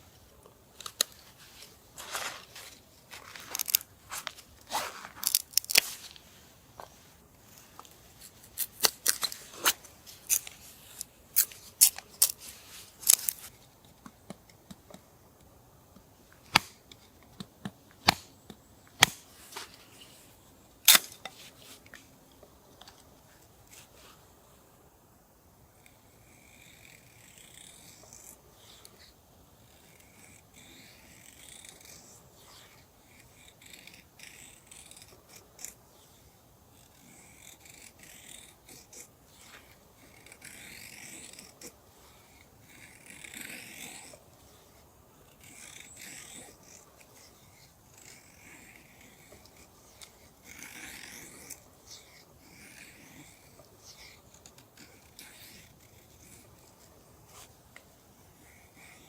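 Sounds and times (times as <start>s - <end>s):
knife scraping wood: 0.9s - 13.5s.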